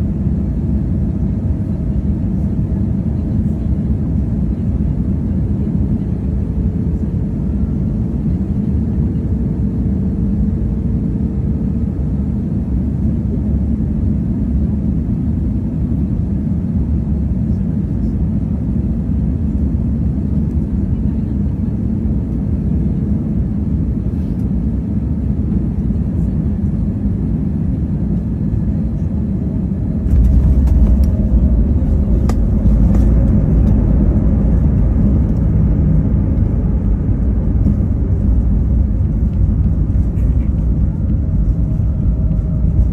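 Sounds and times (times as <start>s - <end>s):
airliner engine rumble in cabin: 0.0s - 42.9s
plane touching down with rattling: 30.0s - 42.9s.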